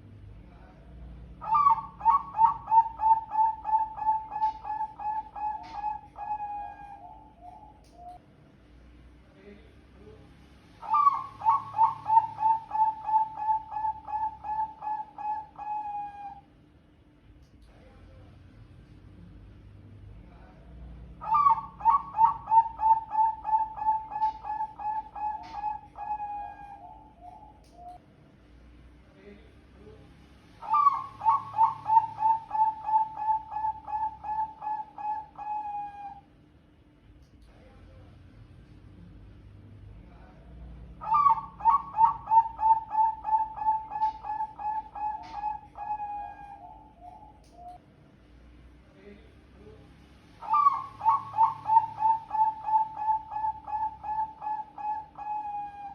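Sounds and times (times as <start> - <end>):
dove cooing: 0.0 - 8.2, 10.8 - 16.4, 20.7 - 28.0, 30.6 - 36.3, 39.9 - 47.8, 50.4 - 55.9.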